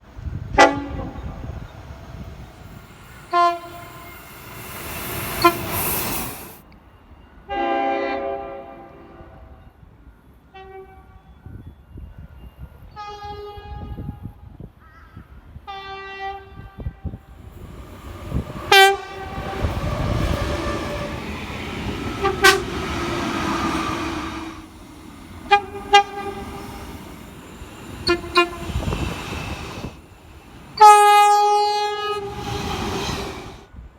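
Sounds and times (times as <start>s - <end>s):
train rumbling by: 0.0s - 10.9s, 16.4s - 33.9s
train horn blasts: 0.5s - 1.6s, 3.1s - 6.5s, 7.5s - 9.6s, 10.5s - 11.2s, 12.9s - 14.2s, 18.3s - 30.0s, 30.7s - 32.6s.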